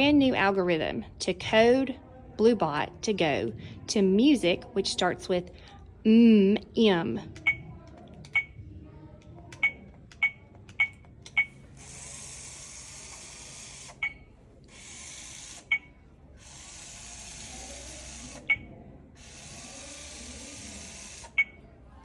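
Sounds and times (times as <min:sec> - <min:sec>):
robot motors whirring: 0:16.4 - 0:18.5, 0:19.2 - 0:21.4.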